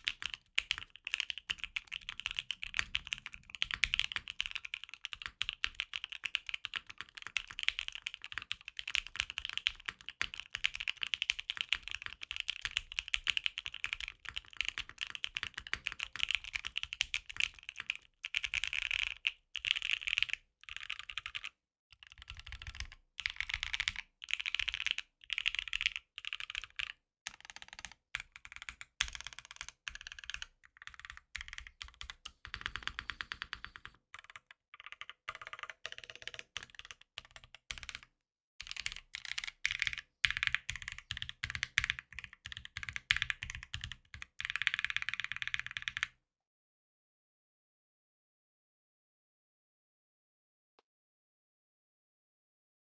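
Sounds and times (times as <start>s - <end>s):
mechanical keyboard typing: 0.0s - 46.1s.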